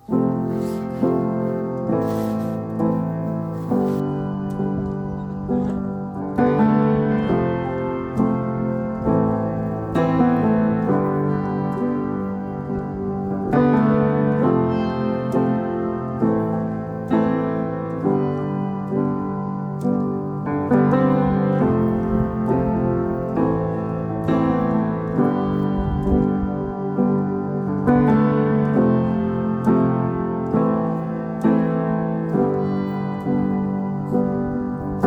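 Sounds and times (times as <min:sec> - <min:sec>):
piano playing: 0:00.0 - 0:35.0.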